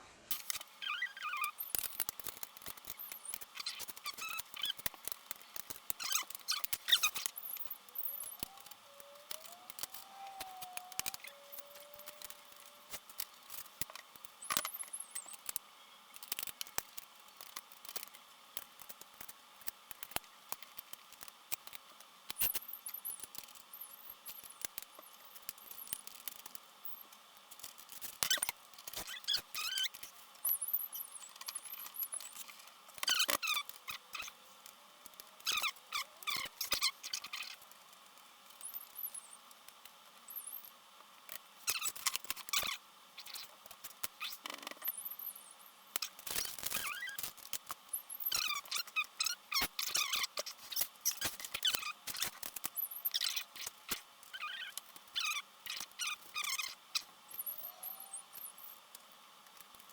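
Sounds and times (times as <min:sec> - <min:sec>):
parts clicking and scraping: 0:00.3 - 0:40.7
short wavering squeak: 0:00.8 - 0:01.8.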